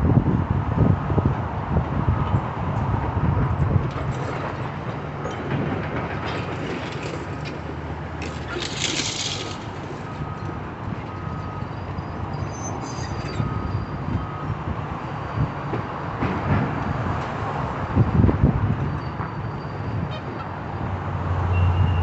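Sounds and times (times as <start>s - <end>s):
heavy machinery rumbling: 1.8s - 12.4s.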